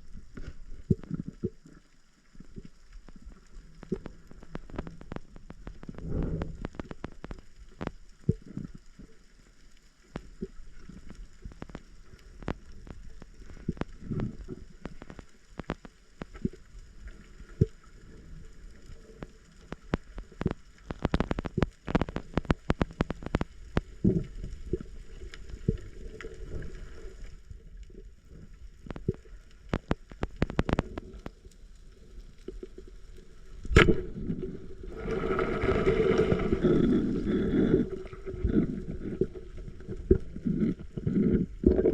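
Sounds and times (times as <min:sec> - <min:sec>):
gurgling water: 0:00.0 - 0:41.9
underwater clicks and knocks: 0:00.3 - 0:01.8, 0:03.8 - 0:09.0, 0:10.1 - 0:16.6, 0:18.8 - 0:26.7, 0:28.8 - 0:31.5, 0:33.6 - 0:41.9
rushing water bubbles: 0:33.4 - 0:41.9.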